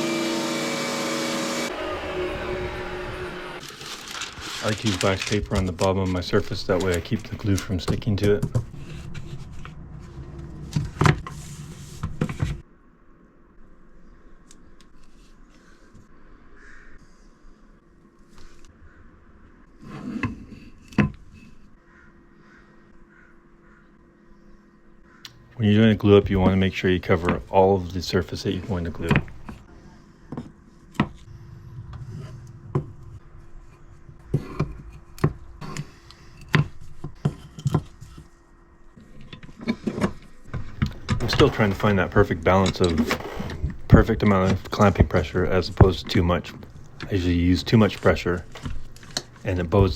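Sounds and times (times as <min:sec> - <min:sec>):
paper rustling: 0:03.6 - 0:12.6, 0:39.4 - 0:49.9.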